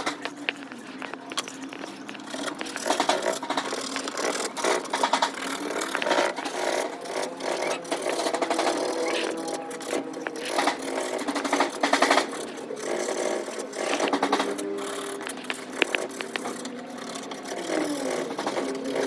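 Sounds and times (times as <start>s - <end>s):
tool scraping and clicking: 0.0s - 19.0s
small electric motor tool running: 1.0s - 19.0s.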